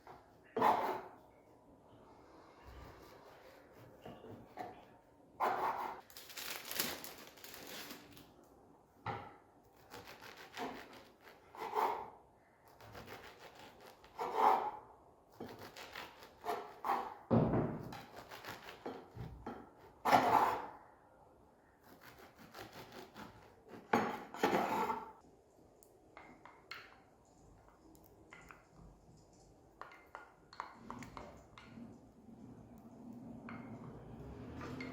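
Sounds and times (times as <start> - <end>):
scraping and rubbing against wood: 22.3 - 25.2.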